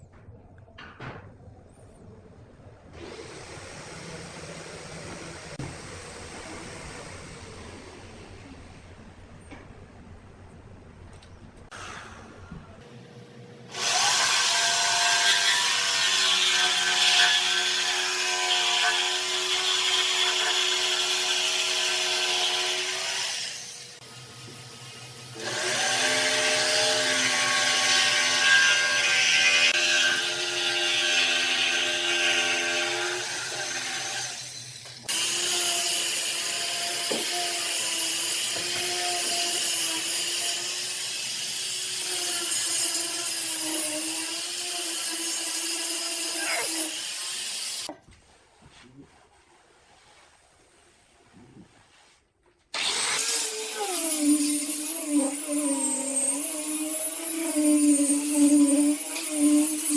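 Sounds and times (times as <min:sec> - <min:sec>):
rasping wood cutting: 0:52.8 - 0:59.9.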